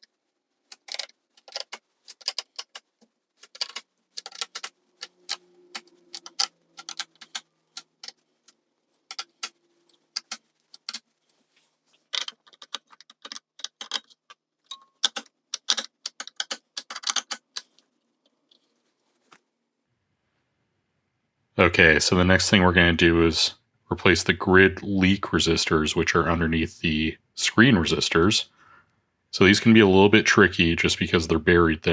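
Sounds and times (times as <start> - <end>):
nuts tightened with hand tools: 3.4 - 8.1, 9.1 - 9.6, 12.2 - 17.7
knobs clicking off panel: 3.4 - 8.2, 15.0 - 17.7.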